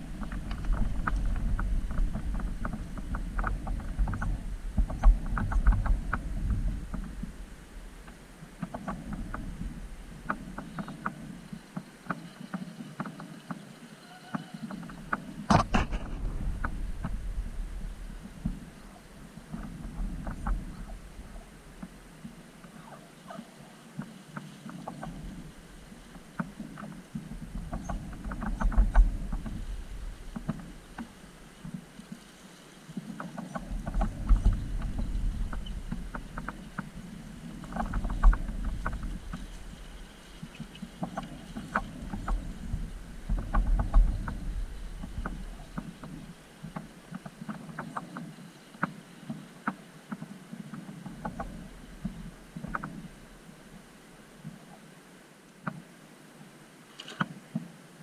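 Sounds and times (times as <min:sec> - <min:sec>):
low rumble: 0:00.0 - 0:08.4, 0:15.0 - 0:22.1
low rumbling: 0:00.0 - 0:11.5, 0:14.8 - 0:22.6, 0:25.0 - 0:32.0, 0:33.5 - 0:46.7.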